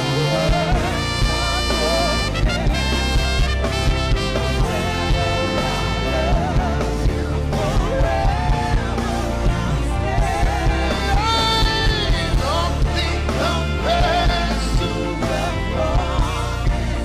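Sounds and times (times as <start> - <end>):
drum beat: 0.0 - 16.9
bass: 0.0 - 17.0
sliding lead melody: 0.0 - 17.0.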